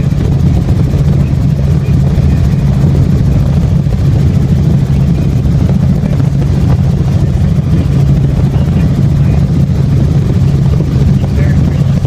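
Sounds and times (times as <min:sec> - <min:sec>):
helicopter engine and rotor: 0:00.0 - 0:12.0.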